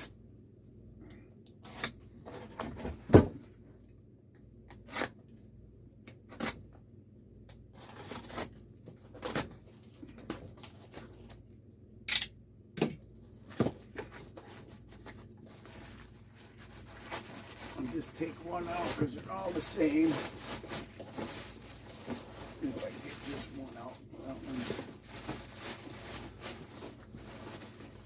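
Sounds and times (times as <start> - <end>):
packaging tearing and rustling: 7.7 - 11.4, 13.4 - 28.0.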